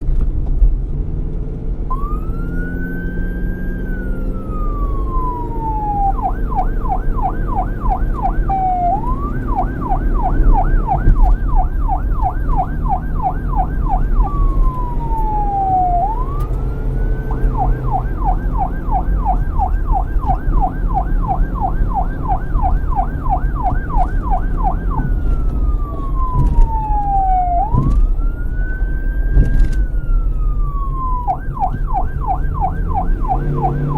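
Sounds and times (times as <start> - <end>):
police siren wailing and yelping: 1.9 - 33.9.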